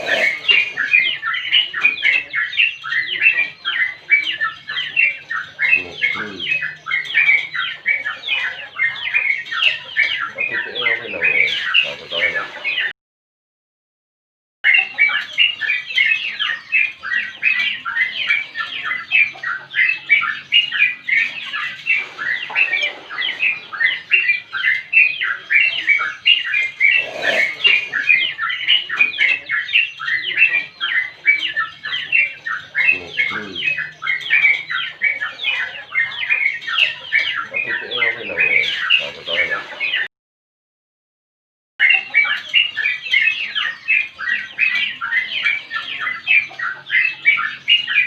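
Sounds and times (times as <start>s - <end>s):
bulbul singing chattering notes: 0.0s - 8.2s.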